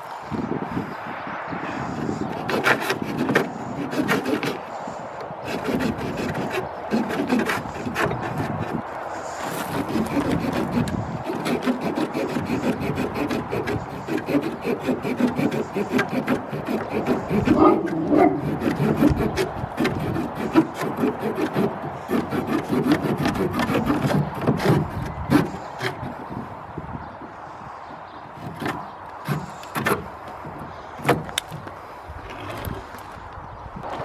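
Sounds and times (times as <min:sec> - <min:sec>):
saw blade cutting wood: 0:01.8 - 0:26.2, 0:28.4 - 0:30.1.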